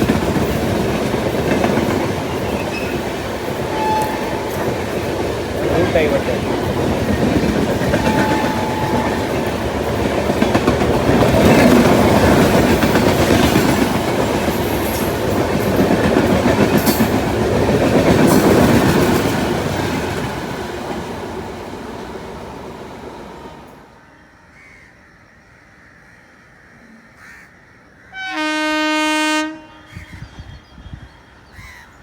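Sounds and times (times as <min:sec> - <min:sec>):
train wheels clattering on rails: 0:00.0 - 0:23.7.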